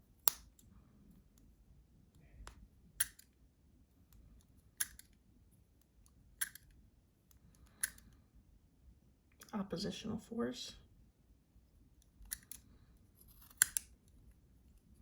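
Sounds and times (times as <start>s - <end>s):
scissors snipping: 13.2s - 13.9s.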